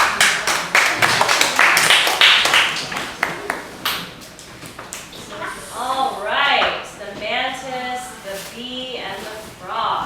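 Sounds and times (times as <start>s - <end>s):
audience clapping: 0.0s - 4.1s.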